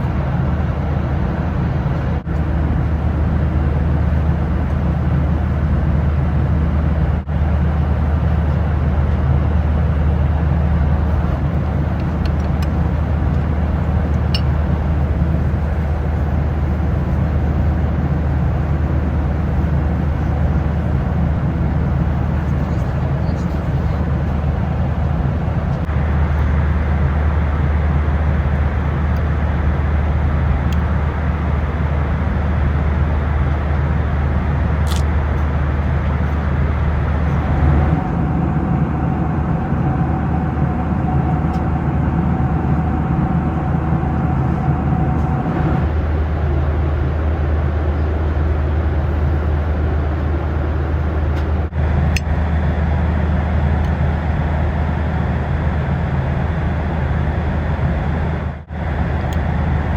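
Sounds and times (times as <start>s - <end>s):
airliner cabin drone: 0.0s - 59.9s
brief click: 34.9s - 35.1s.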